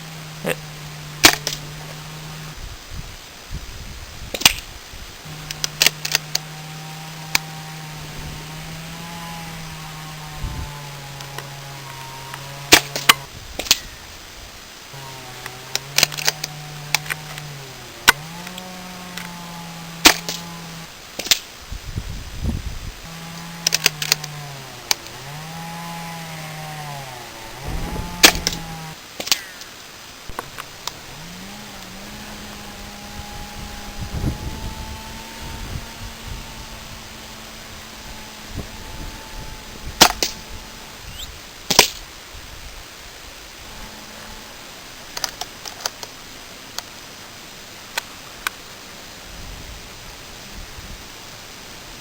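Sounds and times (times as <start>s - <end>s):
small motor running: 0.0s - 3.1s, 5.2s - 14.0s, 14.9s - 20.9s, 23.0s - 29.0s, 30.3s - 41.4s, 43.6s - 45.0s
sharp clicks: 5.3s - 6.5s, 11.2s - 13.9s, 15.4s - 19.4s, 23.3s - 25.3s.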